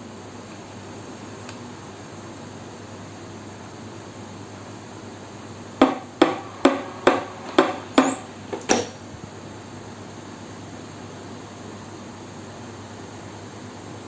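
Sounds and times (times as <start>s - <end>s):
steady background hiss: 0.0s - 12.7s
hard object knocking on hard surface: 5.8s - 8.9s.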